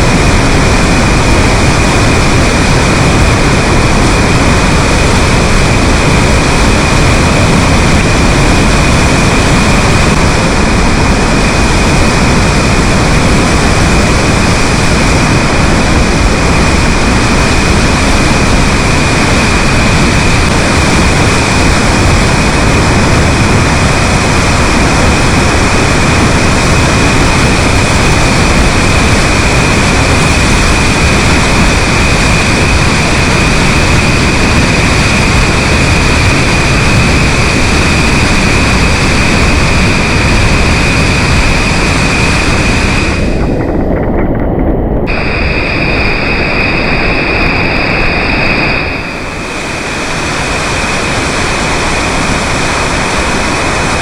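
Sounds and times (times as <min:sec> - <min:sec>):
floodwater rushing torrent: 0:00.0 - 0:44.2, 0:44.9 - 0:54.0
steady high tone: 0:39.5 - 0:53.0.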